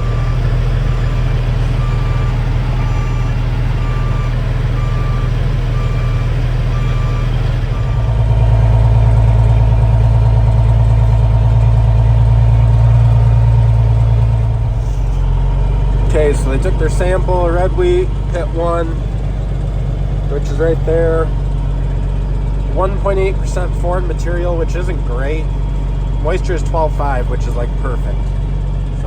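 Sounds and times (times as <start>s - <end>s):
backup alarm beeping: 0.0s - 8.8s
diesel truck engine idling: 0.0s - 29.0s.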